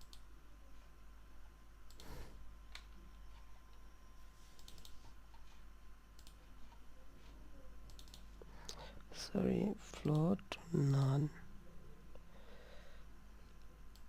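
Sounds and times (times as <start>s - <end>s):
computer keyboard and mouse clicks: 4.6s - 5.5s, 6.2s - 6.8s, 7.9s - 8.8s.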